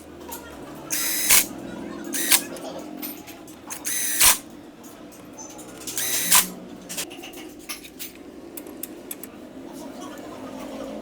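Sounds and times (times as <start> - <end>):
sharp tool click: 0.9 - 1.5, 2.2 - 2.6, 3.7 - 4.4.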